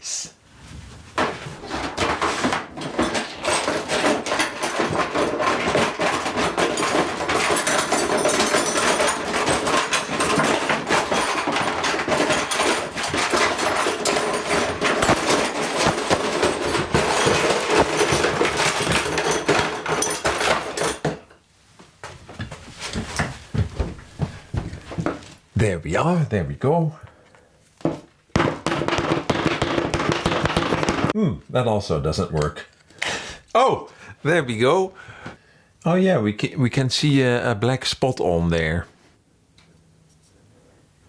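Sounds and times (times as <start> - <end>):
tools clattering together: 1.2 - 21.4, 27.9 - 31.2.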